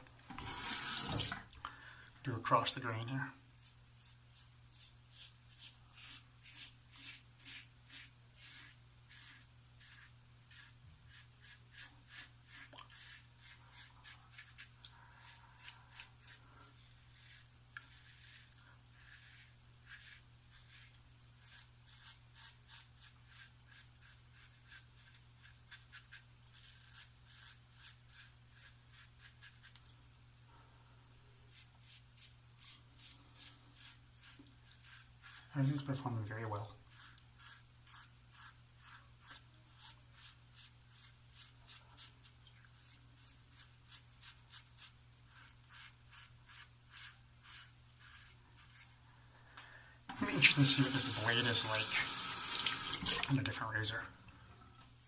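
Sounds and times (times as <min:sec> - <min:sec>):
low steady hum: 0:00.0 - 0:55.0
razor scraping stubble: 0:03.6 - 0:29.8, 0:31.5 - 0:48.9.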